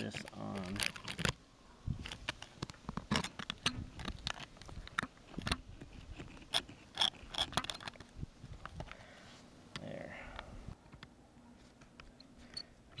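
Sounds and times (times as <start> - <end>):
rubber hose clicking and scraping: 0.0 - 9.0.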